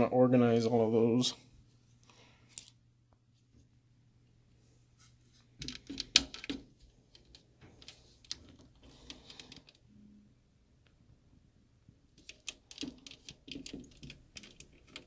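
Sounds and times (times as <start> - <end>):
small metal screws clicking: 12.2 - 15.0.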